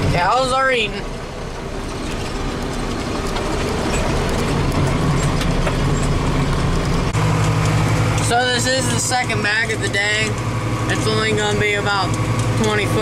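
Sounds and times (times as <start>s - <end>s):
farm machinery engine running: 0.0s - 13.0s.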